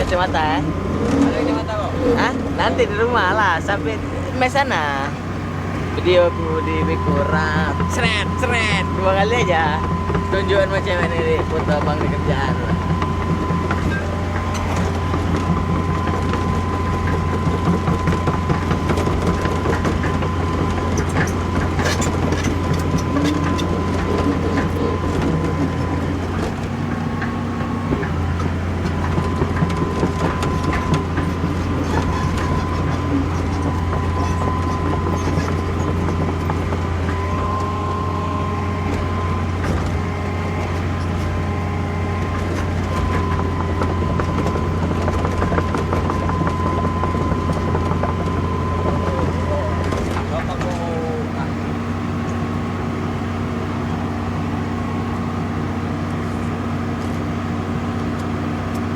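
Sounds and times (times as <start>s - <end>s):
diesel engine running: 0.0s - 58.9s
steady whine: 0.0s - 58.9s
scattered knocks: 6.3s - 37.8s, 38.9s - 51.4s.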